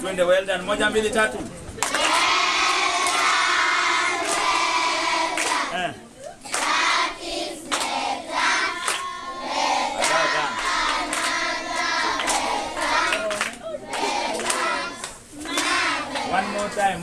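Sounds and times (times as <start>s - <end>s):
hand claps: 1.8s - 3.4s, 4.2s - 4.6s, 5.4s - 5.7s, 6.5s - 6.8s, 7.6s - 8.0s, 8.8s - 9.1s, 10.0s - 16.4s
children singing: 1.9s - 5.7s, 6.6s - 13.3s, 14.0s - 17.0s.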